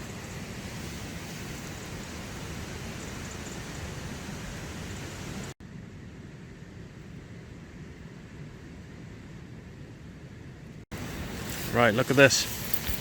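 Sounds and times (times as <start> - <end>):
rain on a tent: 10.9 - 13.0.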